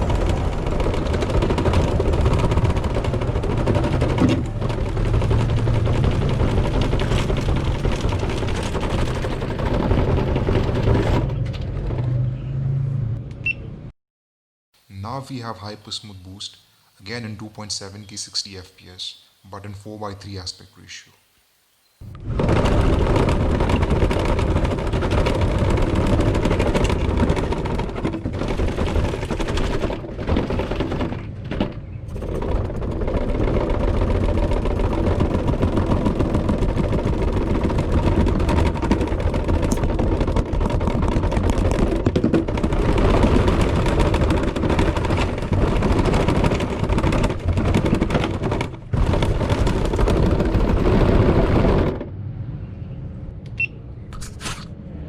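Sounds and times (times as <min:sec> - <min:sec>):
clatter of bumps and rattles: 0:00.0 - 0:12.5, 0:22.0 - 0:52.2.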